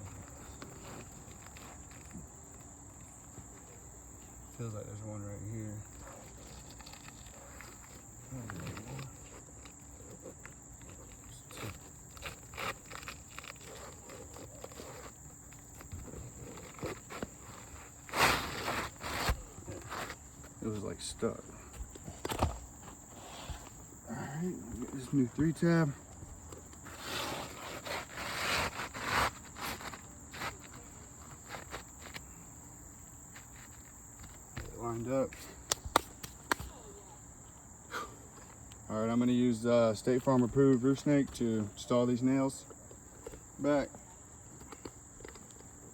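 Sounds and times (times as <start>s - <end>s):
insects chirring: 0.0s - 45.9s
hand tools scraping shingles: 5.8s - 21.0s, 26.6s - 32.4s.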